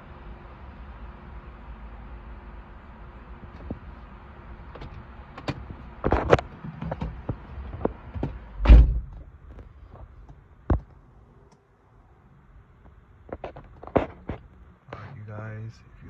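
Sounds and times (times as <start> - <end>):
heavy thump: 8.2 - 9.3.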